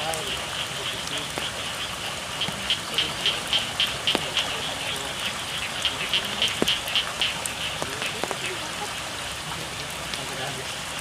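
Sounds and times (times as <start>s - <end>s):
frogs calling: 0.0s - 11.0s
steady rain falling: 0.0s - 11.0s.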